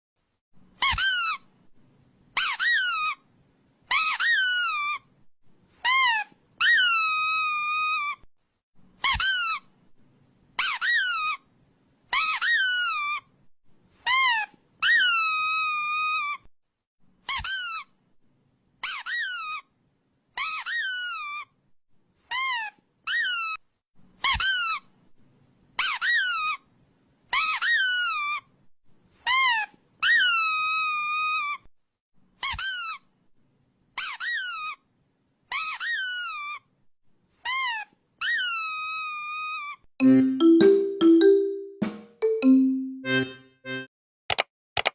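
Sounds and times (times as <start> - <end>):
high-pitched descending squeaks: 40.0 - 43.8.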